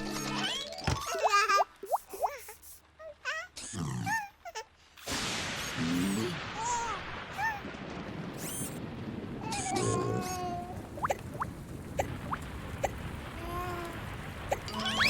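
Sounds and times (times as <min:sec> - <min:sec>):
squeaky cartoon chirps: 0:08.4 - 0:08.8.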